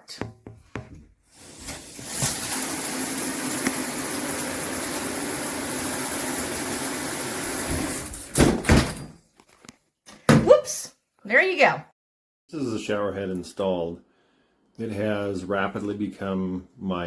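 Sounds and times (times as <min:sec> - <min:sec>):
shower spraying water: 0:01.3 - 0:08.4.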